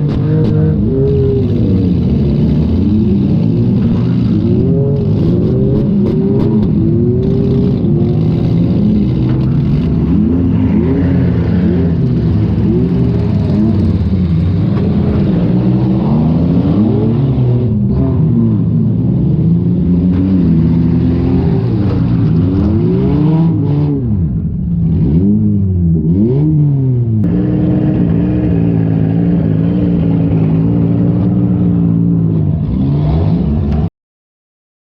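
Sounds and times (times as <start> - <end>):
car engine revving: 0.0 - 33.9.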